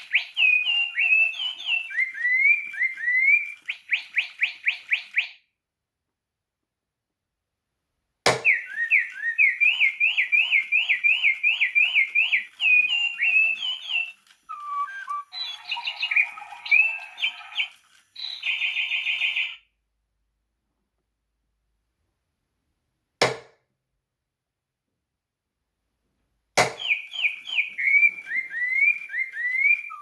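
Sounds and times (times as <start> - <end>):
toy bird chirping: 0.0 - 5.4, 8.4 - 19.6, 26.8 - 30.0.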